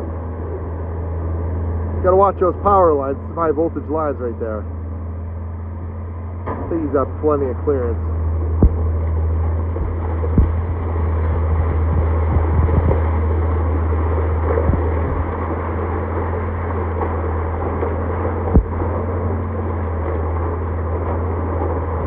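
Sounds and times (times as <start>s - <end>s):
heavy engine running: 0.0s - 22.0s
short knocks: 8.6s - 8.8s, 9.8s - 10.6s, 15.1s - 15.3s, 18.6s - 18.8s.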